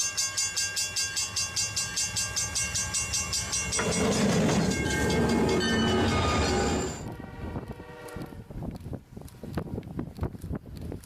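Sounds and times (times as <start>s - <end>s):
train wheel clatter: 0.7s - 7.2s.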